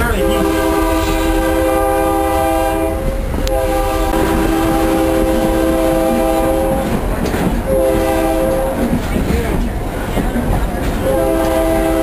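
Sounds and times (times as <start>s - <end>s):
locomotive air horn blasts: 0.0s - 7.0s, 7.7s - 8.9s, 11.0s - 12.0s.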